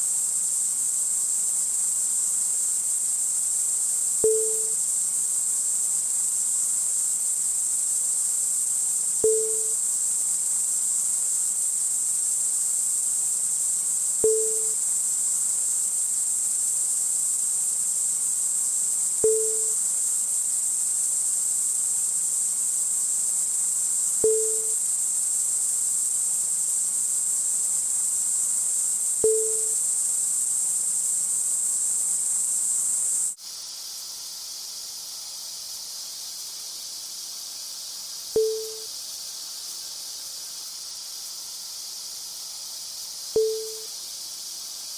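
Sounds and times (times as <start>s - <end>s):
broad hiss: 0.0s - 44.9s
high-pitched bearing whine: 4.3s - 4.8s, 9.3s - 9.8s, 14.3s - 14.8s, 19.3s - 19.8s, 24.3s - 24.8s, 29.3s - 29.8s, 38.4s - 38.9s, 43.4s - 43.9s.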